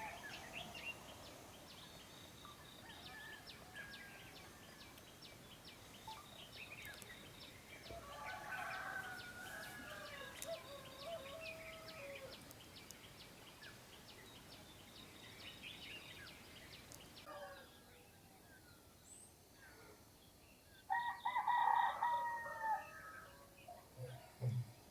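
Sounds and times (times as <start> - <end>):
small birds chirping: 0.0 - 17.5
distant rooster crowing: 2.8 - 4.7, 7.9 - 12.4, 20.9 - 23.4.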